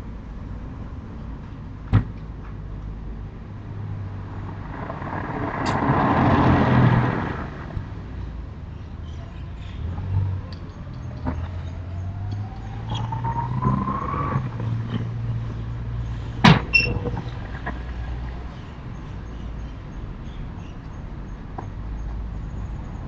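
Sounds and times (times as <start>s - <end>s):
vehicle passing by: 3.5s - 8.5s, 9.2s - 16.4s
rising whine: 10.8s - 15.1s.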